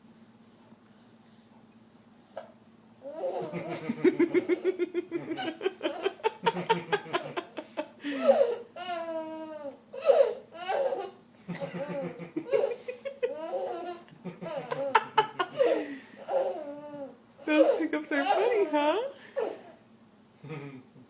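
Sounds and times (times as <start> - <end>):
toddler giggling: 3.0 - 18.8.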